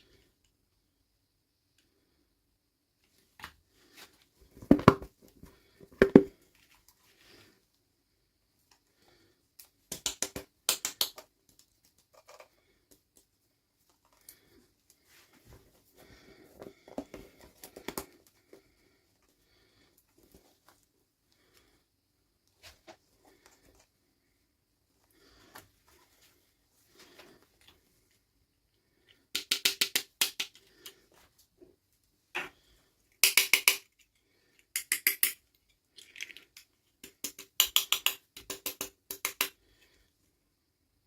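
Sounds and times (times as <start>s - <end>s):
plastic toy clicks and taps: 9.9s - 11.3s, 29.3s - 31.0s, 33.2s - 34.0s, 34.7s - 35.4s, 36.6s - 39.6s.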